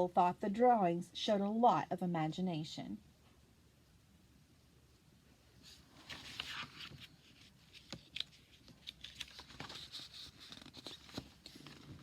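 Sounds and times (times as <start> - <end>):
book pages rustling and turning: 5.6 - 12.0.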